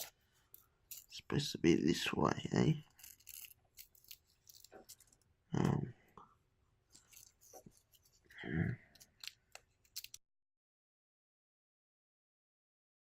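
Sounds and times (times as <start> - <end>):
small parts clicking and scraping: 0.0 - 1.2, 2.8 - 5.3, 6.9 - 10.2
murmured vocal sounds: 8.3 - 8.9.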